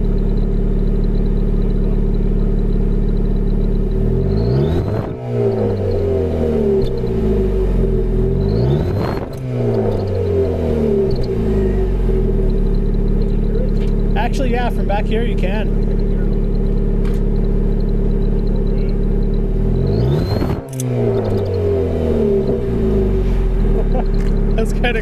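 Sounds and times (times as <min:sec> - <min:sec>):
car engine idling and revving: 0:00.0 - 0:25.0
exhaust whistle chirp: 0:19.8 - 0:24.7.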